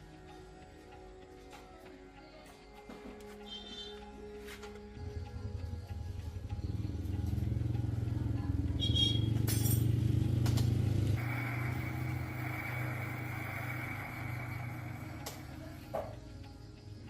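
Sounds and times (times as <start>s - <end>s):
vehicle motor humming: 5.7s - 16.2s
high whistle with hiss: 11.2s - 16.0s.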